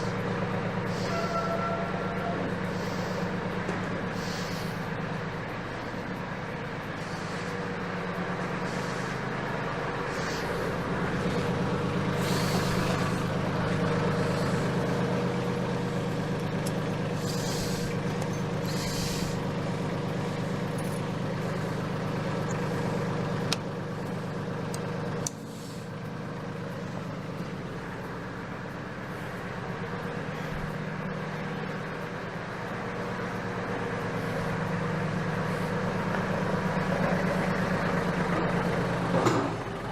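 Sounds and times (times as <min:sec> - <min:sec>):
tractor diesel engine running: 0:00.0 - 0:39.9
short hisses: 0:02.7 - 0:03.4, 0:04.1 - 0:04.9, 0:07.0 - 0:07.7, 0:08.6 - 0:09.4, 0:10.0 - 0:10.8, 0:12.2 - 0:13.3, 0:17.2 - 0:18.0, 0:18.6 - 0:19.4, 0:25.4 - 0:25.9.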